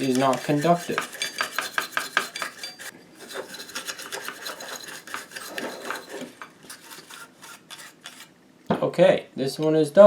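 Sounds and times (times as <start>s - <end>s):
paintbrush bristle strokes scrubbing: 0.0s - 6.2s.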